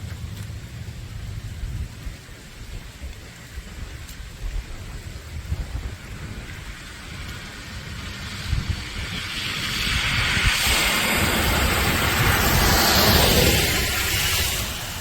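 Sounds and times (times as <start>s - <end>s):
rain-like hiss: 0.0s - 15.0s
wind rumbling on microphone: 0.0s - 15.0s
rushing noise: 5.4s - 15.0s.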